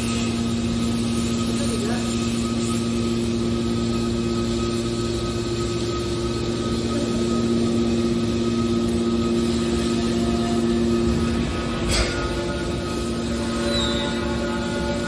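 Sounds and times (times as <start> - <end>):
hydraulic baler motor humming: 6.1 - 15.0.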